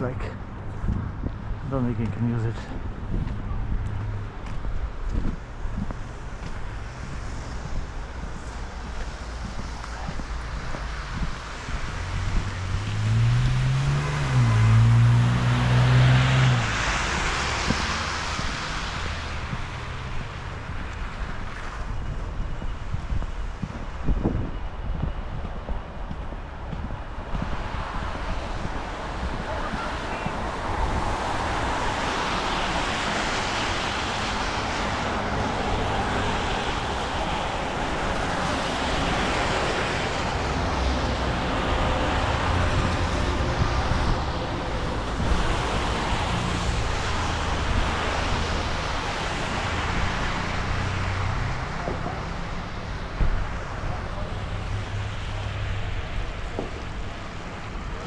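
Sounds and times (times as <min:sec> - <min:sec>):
wind buffeting microphone: 0:00.0 - 0:13.8
street traffic noise: 0:00.0 - 0:58.0.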